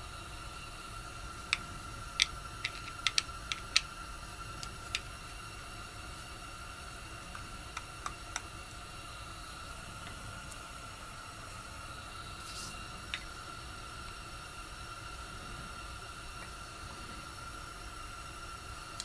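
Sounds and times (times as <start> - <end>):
faint hiss and hum: 0.0 - 19.0
small tools clicking and tapping: 1.5 - 3.9.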